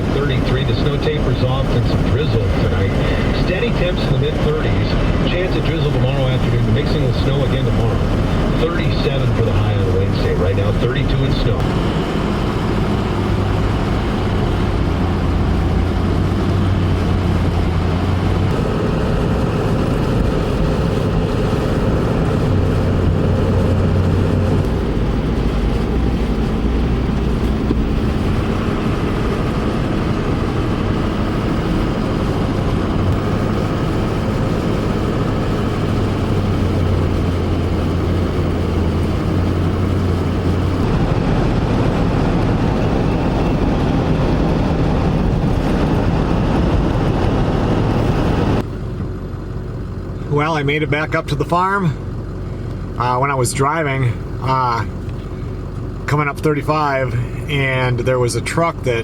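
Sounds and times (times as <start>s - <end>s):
vehicle engine hum: 0.0s - 59.0s
tyre and wind noise: 11.6s - 49.2s.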